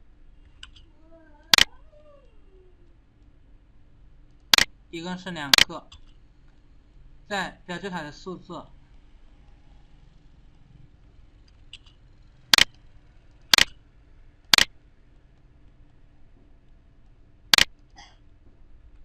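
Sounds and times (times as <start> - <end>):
computer mouse clicking: 4.3 - 4.7, 13.5 - 13.8, 17.5 - 17.8.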